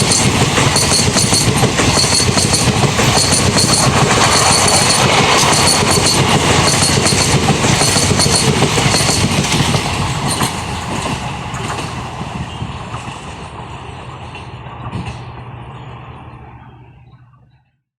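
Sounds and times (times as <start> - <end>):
wheels clicking over rail joints: 0.0 - 13.2
train rattling past: 0.0 - 17.1.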